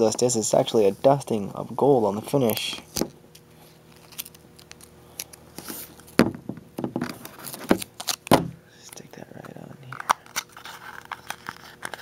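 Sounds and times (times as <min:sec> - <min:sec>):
packaging rustle: 0:03.9 - 0:06.1, 0:09.9 - 0:12.0.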